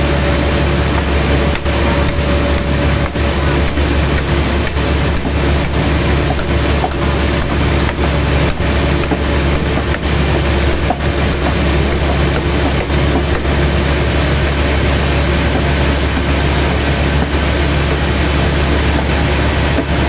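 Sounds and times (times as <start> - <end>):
sawmill machinery running: 0.0 - 20.0.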